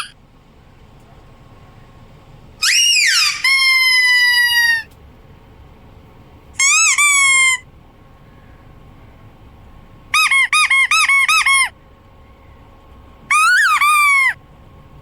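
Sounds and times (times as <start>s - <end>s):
squeaky dog toy squeaking: 2.6s - 4.9s, 6.6s - 7.6s, 10.2s - 11.7s, 13.3s - 14.4s.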